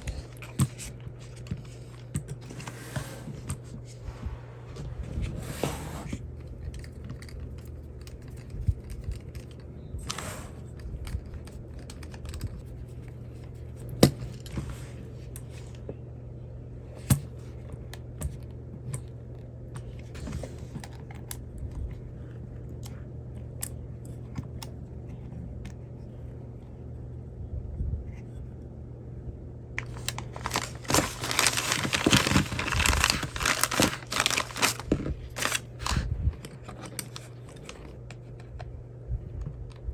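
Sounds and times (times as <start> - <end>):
steady low hum: 0.0 - 39.9
small parts clicking and tapping: 6.4 - 9.7, 10.8 - 12.6
plastic packaging crinkling: 29.8 - 38.1.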